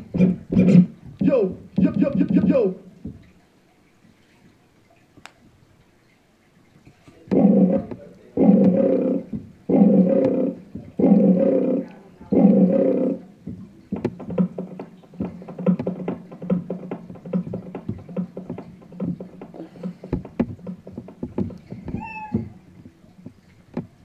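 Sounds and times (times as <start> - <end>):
keyboard roar sample: 7.3 - 13.3.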